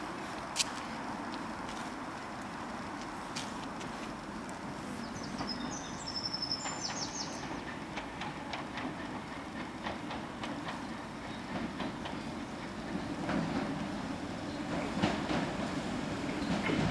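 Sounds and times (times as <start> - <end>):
wheels clicking over rail joints: 0.0 - 12.3
train rumbling: 0.0 - 16.9.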